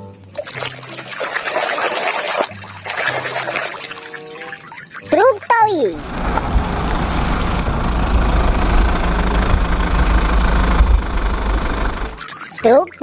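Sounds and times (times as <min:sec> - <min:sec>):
water spray rushing: 0:05.9 - 0:12.2
low rumble: 0:06.0 - 0:12.2.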